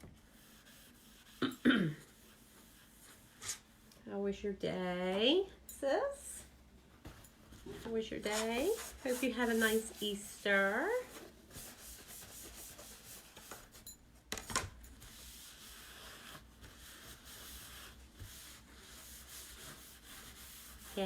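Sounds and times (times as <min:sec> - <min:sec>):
surface being wiped by hand: 0:00.3 - 0:01.4, 0:02.0 - 0:03.8, 0:07.0 - 0:13.8, 0:15.0 - 0:21.0.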